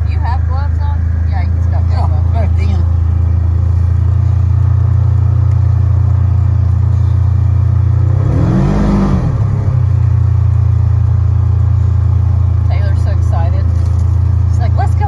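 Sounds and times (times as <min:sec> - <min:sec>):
golf cart engine running: 0:00.0 - 0:15.0.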